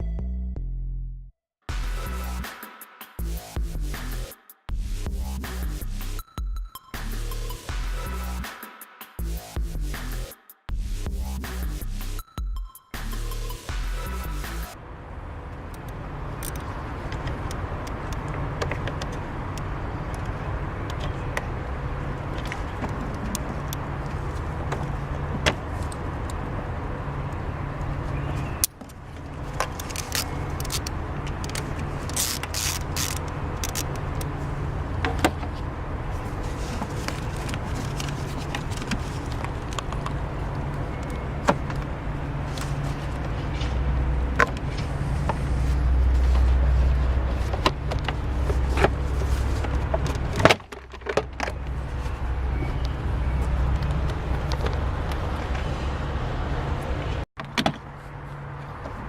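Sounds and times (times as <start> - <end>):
car engine humming: 13.3 - 59.0.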